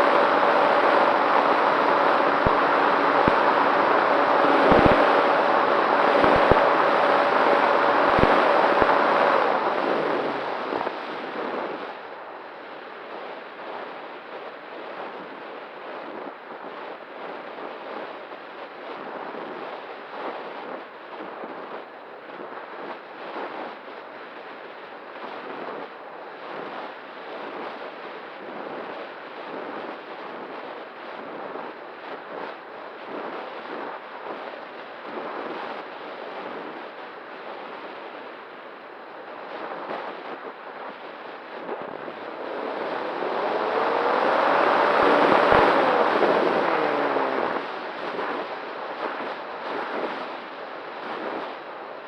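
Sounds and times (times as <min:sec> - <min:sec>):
electric motor whine: 0:00.0 - 0:10.9, 0:42.3 - 0:47.7
wind rushing over microphone: 0:00.0 - 0:23.9, 0:25.2 - 0:52.0.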